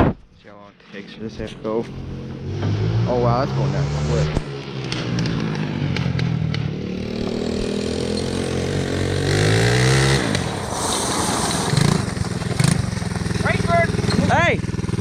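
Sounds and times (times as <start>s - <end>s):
small engine revving: 1.9s - 15.0s.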